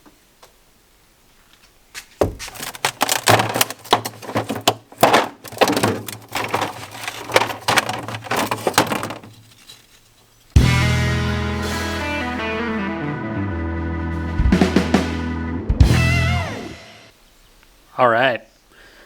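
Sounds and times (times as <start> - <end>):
hard objects clattering: 2.2 - 10.4.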